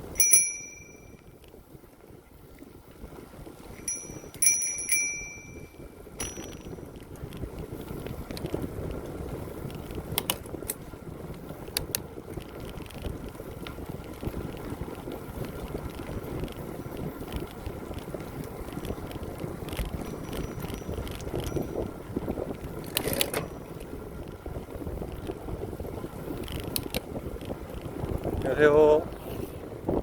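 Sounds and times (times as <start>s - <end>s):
bicycle bell ringing: 0.0s - 1.4s, 3.7s - 7.0s, 20.0s - 22.2s
bicycle tyre and wind noise: 0.0s - 30.0s.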